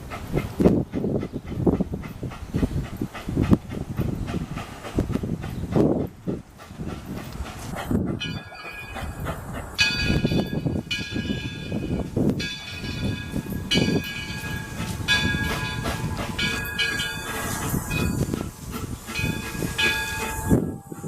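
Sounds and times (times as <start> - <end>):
low rumble of moving train: 0.0 - 21.0
steam locomotive bell ringing: 8.2 - 21.0.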